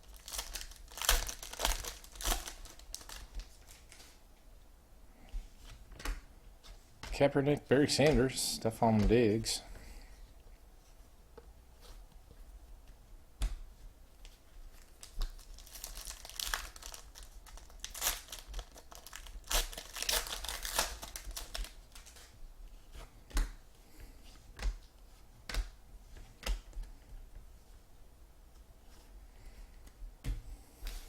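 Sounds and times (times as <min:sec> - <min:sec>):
wrapper tearing and crinkling: 0:00.0 - 0:04.0, 0:14.8 - 0:22.3.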